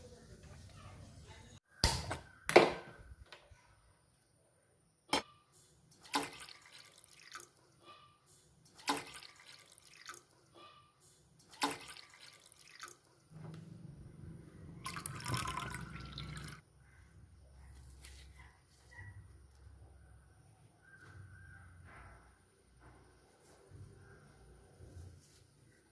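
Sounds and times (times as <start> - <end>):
water splashing and dripping: 5.9 - 7.8, 8.6 - 10.5, 11.4 - 13.3, 14.8 - 16.6.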